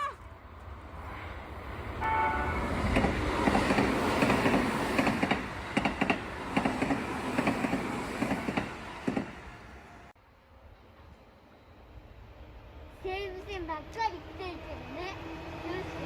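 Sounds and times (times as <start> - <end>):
train horn blast: 2.0 - 2.9
train wheels clacking over rail joints: 2.9 - 9.4.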